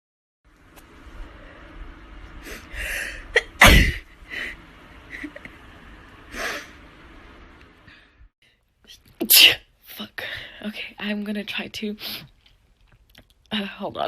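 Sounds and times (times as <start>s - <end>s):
person sneezing: 3.4s - 4.0s.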